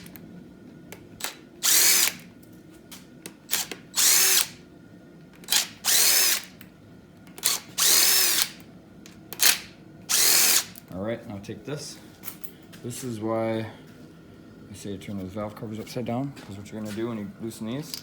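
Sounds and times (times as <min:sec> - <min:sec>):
impact gun whining bursts: 0:01.2 - 0:02.3, 0:03.5 - 0:04.6, 0:05.4 - 0:06.6, 0:07.4 - 0:08.6, 0:09.4 - 0:10.8.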